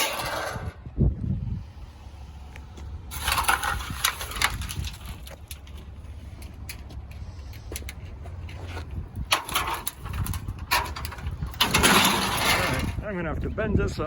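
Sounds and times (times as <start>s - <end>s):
scrap metal scraping and clattering: 0.0s - 0.9s, 3.0s - 13.2s
low rumble: 0.0s - 14.0s.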